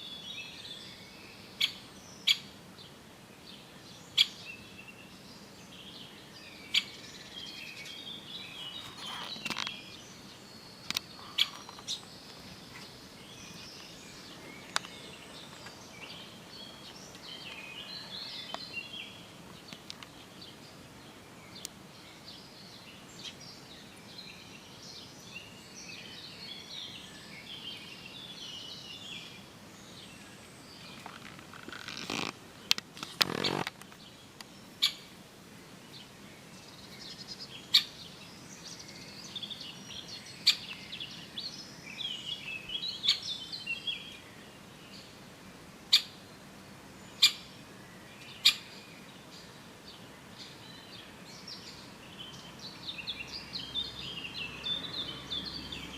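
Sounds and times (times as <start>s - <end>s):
woodpecker chattering calls: 1.6s - 2.5s, 6.7s - 7.0s, 10.9s - 12.1s, 34.8s - 35.1s, 37.7s - 38.0s, 40.4s - 40.8s, 43.0s - 43.3s, 47.2s - 47.5s, 48.4s - 48.7s.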